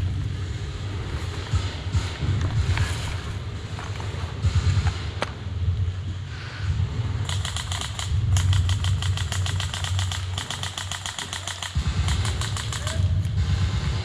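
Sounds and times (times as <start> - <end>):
steady low rumble: 0.0 - 14.0
airsoft rifle firing bursts: 7.2 - 14.0.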